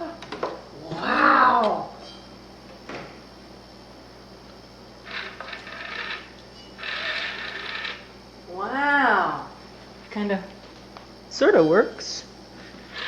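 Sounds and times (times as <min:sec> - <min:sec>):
toy motor whirring and rattling: 0:05.0 - 0:08.1.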